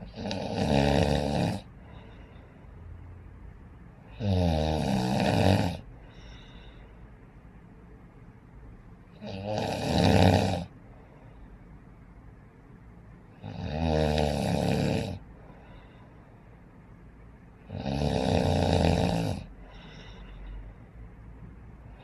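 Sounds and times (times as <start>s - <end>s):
snoring: 0.0s - 1.7s, 4.1s - 5.9s, 9.2s - 10.7s, 13.4s - 15.2s, 17.7s - 19.5s.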